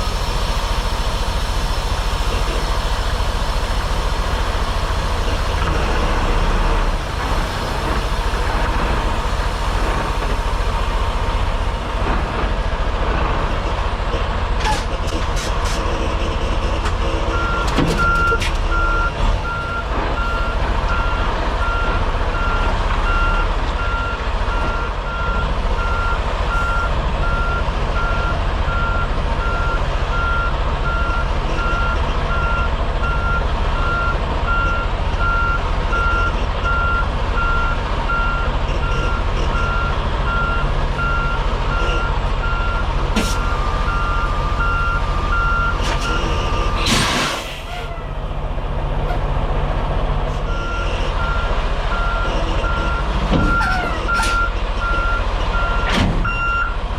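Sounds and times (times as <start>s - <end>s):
diesel engine rumble: 0.0s - 56.9s
truck reversing alarm beeping: 15.8s - 47.9s, 50.3s - 56.8s
loud hiss of air: 46.8s - 47.7s.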